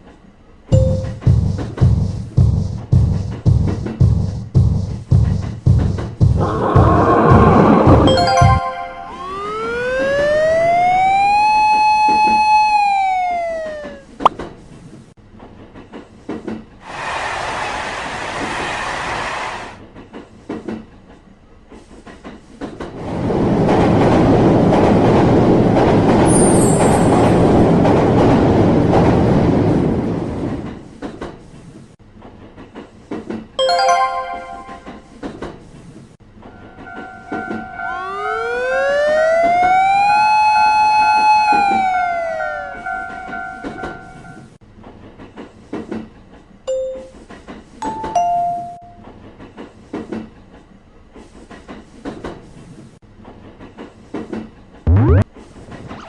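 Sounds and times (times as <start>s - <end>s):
passing train rumble: 0.0s - 11.3s, 22.4s - 34.1s
siren-like rising tone: 8.1s - 14.2s, 37.2s - 43.6s, 54.9s - 55.2s.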